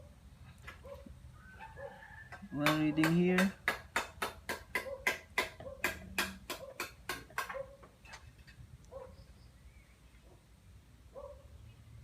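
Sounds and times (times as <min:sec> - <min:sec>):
dog barking: 0:00.8 - 0:02.1, 0:04.8 - 0:06.0, 0:07.4 - 0:07.8, 0:08.9 - 0:09.2, 0:11.1 - 0:11.5.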